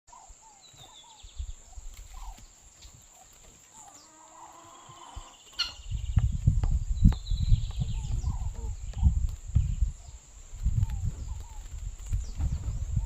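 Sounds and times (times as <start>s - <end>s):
bird chirps and trill: 3.9s - 6.4s.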